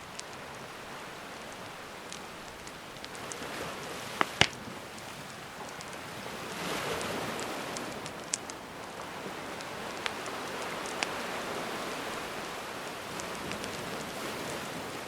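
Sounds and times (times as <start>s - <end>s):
campfire crackling and popping: 0.0s - 15.0s
ocean waves washing in: 0.0s - 15.0s
loud wood snaps: 4.2s - 5.9s.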